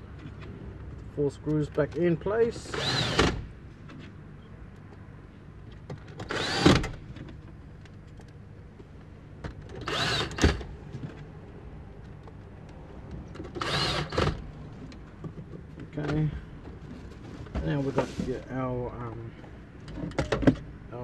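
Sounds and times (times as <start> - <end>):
cordless drill whirring: 2.7 - 3.4, 6.2 - 7.0, 9.8 - 10.6, 13.6 - 14.4.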